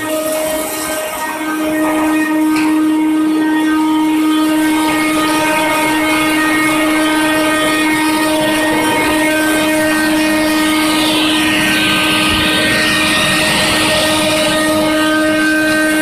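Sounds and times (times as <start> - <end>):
vacuum cleaner motor whine: 0.0 - 16.0
hissing rush of air: 5.3 - 16.0.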